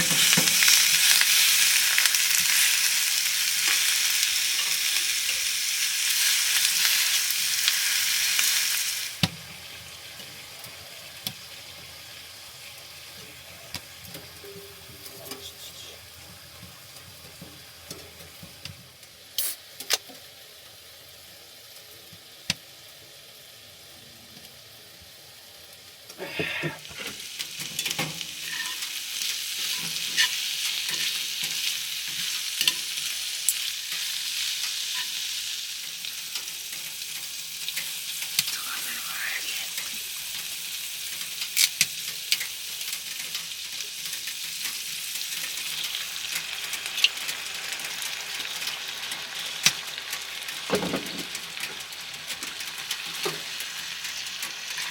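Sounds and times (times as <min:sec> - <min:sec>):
food sizzling in a pan: 0:00.0 - 0:54.9.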